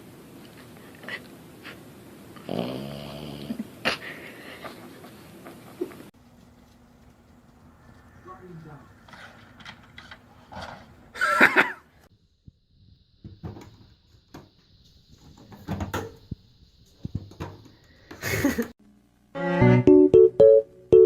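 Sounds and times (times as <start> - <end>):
keyboard music: 19.3 - 21.0.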